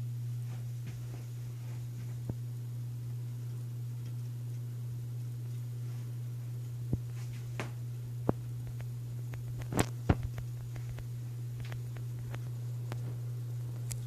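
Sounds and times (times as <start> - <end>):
ceiling fan motor hum: 0.0 - 14.0.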